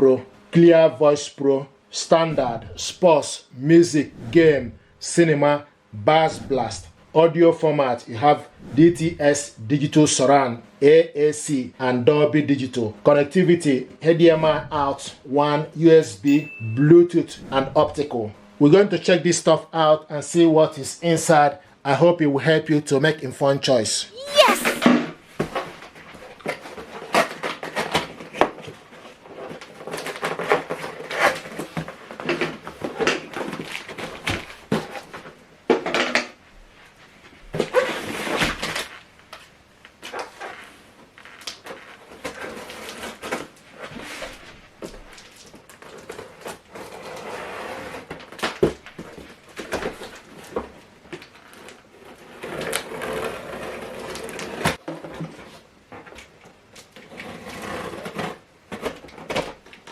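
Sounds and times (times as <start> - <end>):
cardboard box packaging rustling: 25.5 - 35.4.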